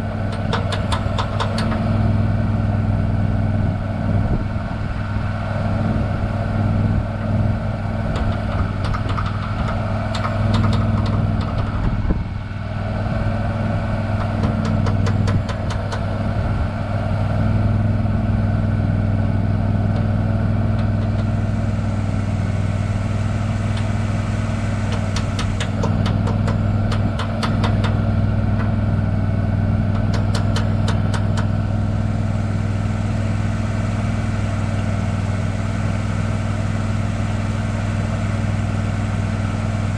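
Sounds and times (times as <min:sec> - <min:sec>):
engine idling: 0:00.0 - 0:39.9
rapid clicking: 0:00.3 - 0:01.8, 0:08.1 - 0:11.8, 0:14.2 - 0:16.1, 0:24.9 - 0:28.0.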